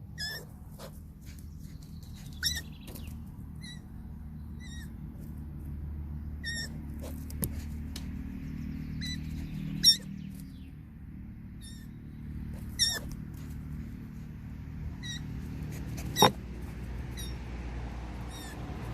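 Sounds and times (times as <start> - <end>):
deer fawn peep calls: 0.0 - 5.4, 6.2 - 7.4, 8.8 - 10.4, 11.5 - 13.2, 14.9 - 17.5, 18.2 - 18.9.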